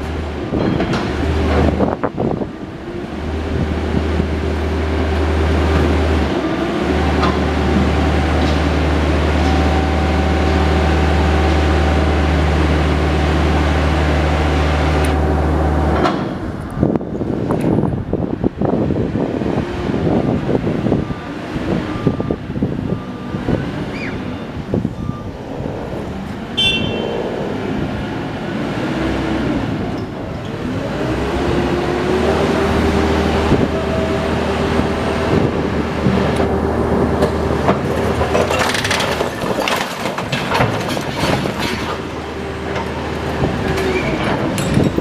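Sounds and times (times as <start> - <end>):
heavy diesel machinery running: 0.0 - 45.0
masonry cracking and knocking: 37.7 - 42.2.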